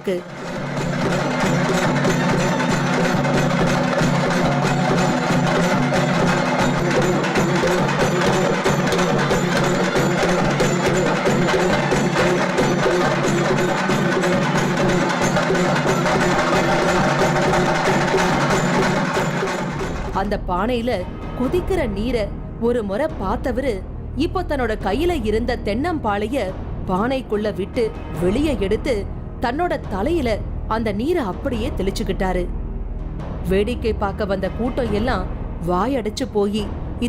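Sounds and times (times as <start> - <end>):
drums beaten fast with sticks: 0.1 - 20.4.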